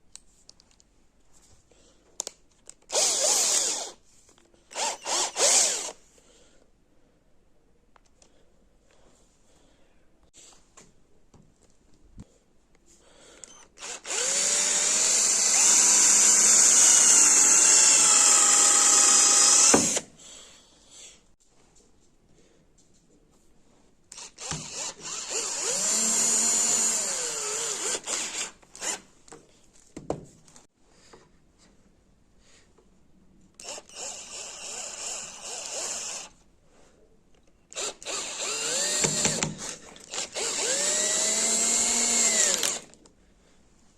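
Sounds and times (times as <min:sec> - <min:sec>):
electric drill whining: 0:02.9 - 0:04.0, 0:04.7 - 0:06.0, 0:13.5 - 0:20.0, 0:24.1 - 0:29.0, 0:33.6 - 0:36.4, 0:37.7 - 0:43.0.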